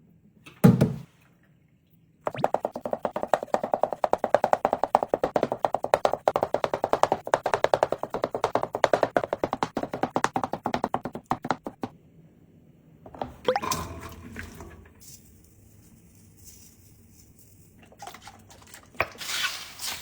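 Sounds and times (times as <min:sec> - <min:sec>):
rapid even tapping: 0:02.3 - 0:11.9.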